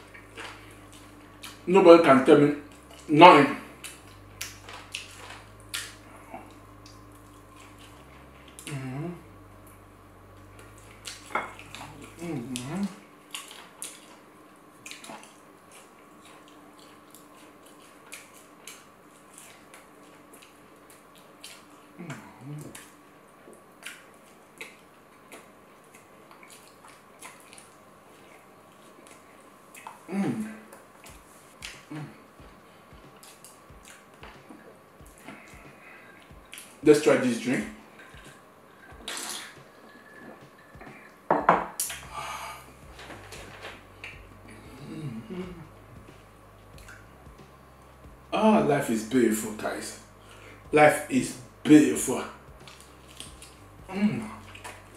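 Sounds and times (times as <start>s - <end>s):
person chewing food: 0.0s - 1.7s, 2.6s - 8.9s, 10.4s - 36.8s, 37.8s - 41.2s, 41.8s - 47.5s, 52.4s - 54.9s
faint steady hum: 0.0s - 54.9s
person sipping and swallowing: 39.0s - 39.7s
crisp crunches and clicks: 52.7s - 53.6s.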